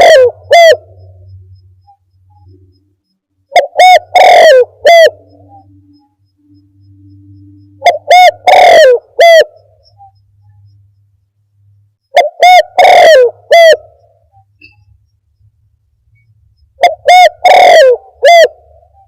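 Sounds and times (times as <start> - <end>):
dove cooing: 0.0 - 1.2, 3.5 - 5.8, 7.8 - 10.2, 12.1 - 14.8, 16.8 - 19.0.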